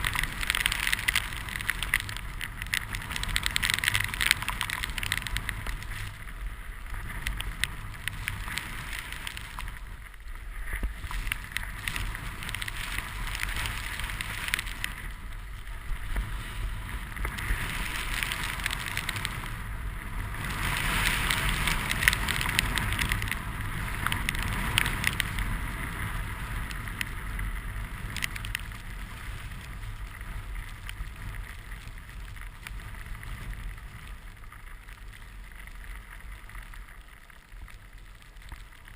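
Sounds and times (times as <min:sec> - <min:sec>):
snowboard scraping snow: 0:00.0 - 0:36.6
wind rumbling on microphone: 0:00.0 - 0:38.9.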